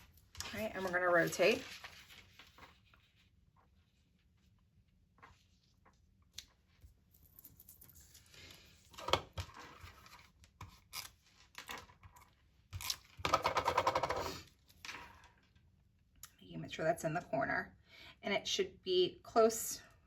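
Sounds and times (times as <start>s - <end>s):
paper rustling and scraping: 0.0s - 4.6s.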